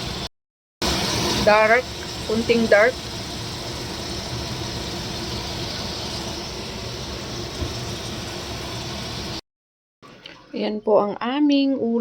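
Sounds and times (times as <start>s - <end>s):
shrimp stir-frying in butter: 0.8s - 9.4s.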